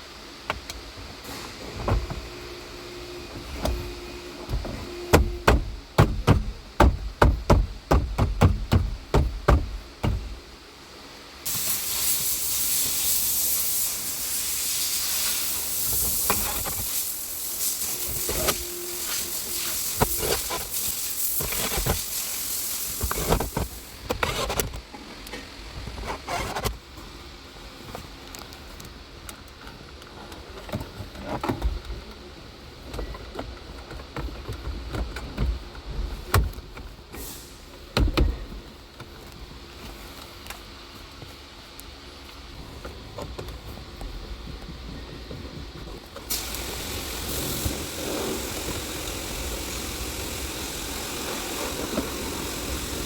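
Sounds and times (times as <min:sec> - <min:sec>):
blower fan rushing air: 0:00.0 - 0:24.1, 0:35.2 - 0:53.0.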